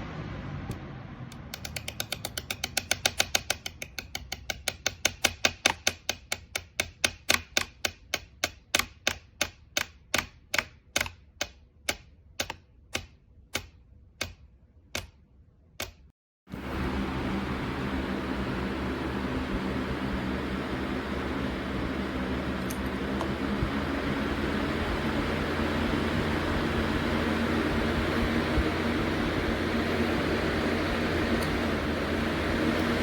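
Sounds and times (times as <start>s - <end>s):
spinning fan clicking: 0.7s - 15.2s, 15.8s - 33.0s
fan air rushing: 16.5s - 33.0s.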